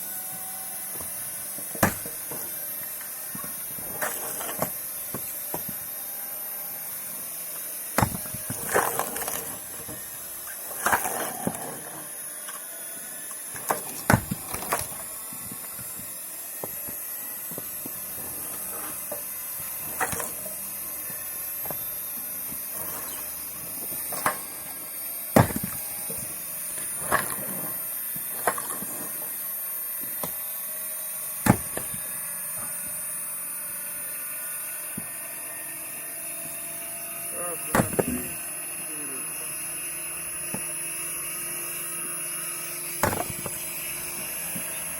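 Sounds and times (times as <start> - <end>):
high-pitched background whine: 0.0 - 44.9
wood pieces falling: 13.5 - 24.8, 25.4 - 29.2, 43.0 - 44.9.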